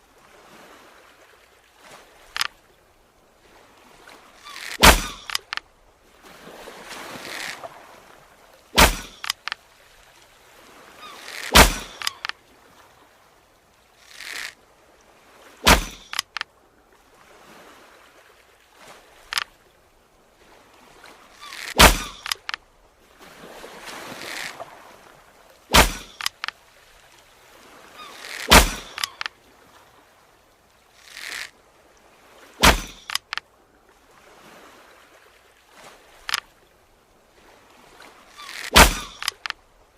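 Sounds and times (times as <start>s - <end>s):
faint clicks: 2.2s - 2.6s, 4.4s - 5.7s, 8.9s - 9.6s, 11.1s - 12.4s, 14.0s - 14.6s, 15.7s - 16.5s, 19.2s - 19.5s, 21.4s - 22.6s, 25.8s - 26.6s, 28.1s - 29.3s, 31.0s - 31.5s, 32.7s - 33.5s, 38.4s - 39.6s
sharp arrow cracks: 4.4s - 5.6s, 8.8s - 9.6s, 11.1s - 12.4s, 14.1s - 14.6s, 15.6s - 16.4s, 21.4s - 22.6s, 24.0s - 24.6s, 25.7s - 26.5s, 28.1s - 29.3s, 31.0s - 31.5s, 32.6s - 33.4s, 38.4s - 39.6s.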